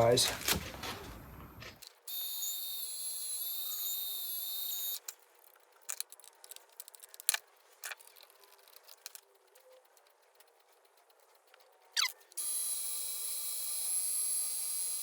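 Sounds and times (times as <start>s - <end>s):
small motor whining: 2.1s - 5.0s, 12.0s - 15.0s.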